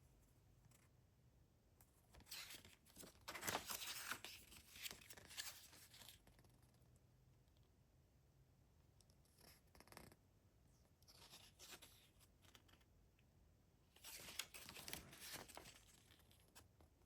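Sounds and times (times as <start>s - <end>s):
cd packaging rustling and scraping: 2.2s - 6.1s.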